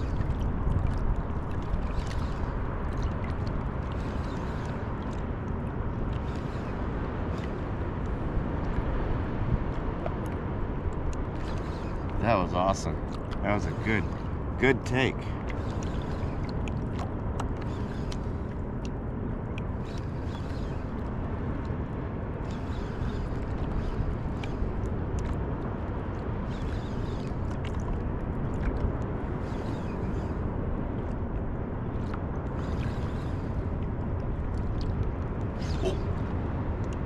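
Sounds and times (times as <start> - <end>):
water lapping around surfboard: 0.0 - 7.7, 15.4 - 21.1, 26.7 - 29.9
wind rumble on microphone: 0.0 - 37.0.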